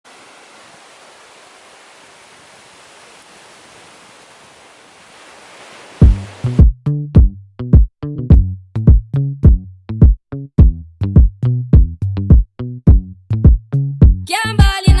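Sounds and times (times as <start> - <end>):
steady rushing hiss: 0.1 - 6.6
electronic music with drum-machine beat: 6.0 - 7.3.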